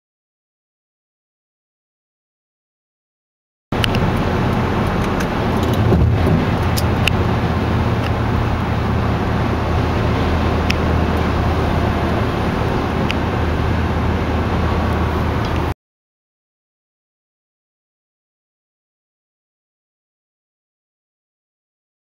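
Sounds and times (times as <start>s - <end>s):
lawn tractor engine running: 3.8s - 15.7s.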